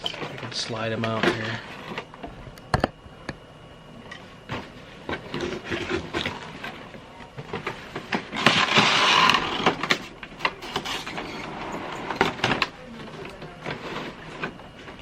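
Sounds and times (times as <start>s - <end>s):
packaging clicks and scrapes: 4.5s - 15.0s.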